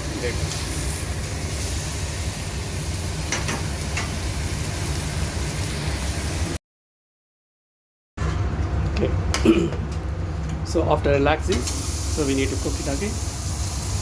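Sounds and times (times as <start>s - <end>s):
kitchen ventilation hum: 0.0s - 6.6s, 8.2s - 14.0s
steak sizzling on a grill: 0.0s - 6.6s, 11.6s - 14.0s.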